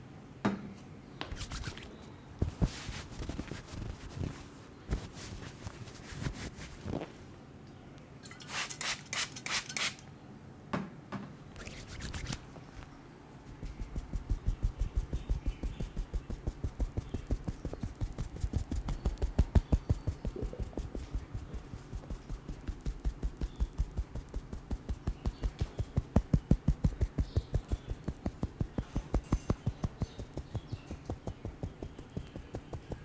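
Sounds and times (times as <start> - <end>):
hands rubbing skin and hair: 1.3 - 7.2, 8.5 - 10.0, 11.6 - 33.0
rapid tapping massage: 13.4 - 33.0.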